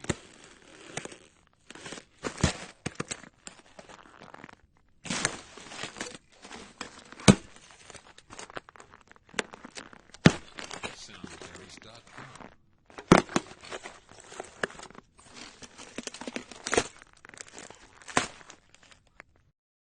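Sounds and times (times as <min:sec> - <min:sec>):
footsteps crunching on ice: 0:00.0 - 0:19.4.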